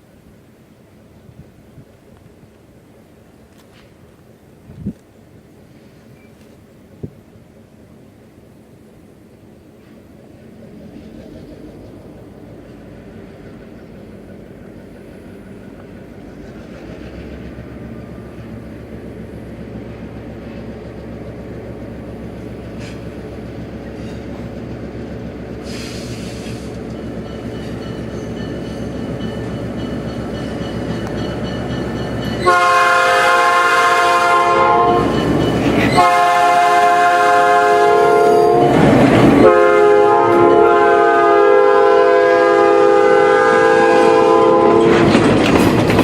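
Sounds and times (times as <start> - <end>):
locomotive rumble: 0.3 - 46.0
locomotive air horn blasts: 32.4 - 35.2, 35.9 - 45.1.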